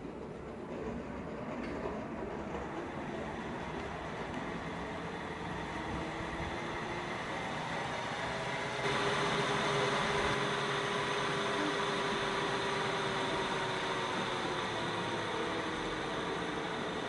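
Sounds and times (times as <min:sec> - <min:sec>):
funicular car rumbling on track: 0:00.0 - 0:17.0.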